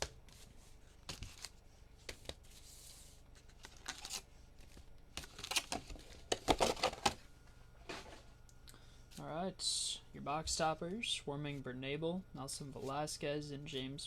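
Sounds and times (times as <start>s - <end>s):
packaging tearing: 5.2s - 5.9s.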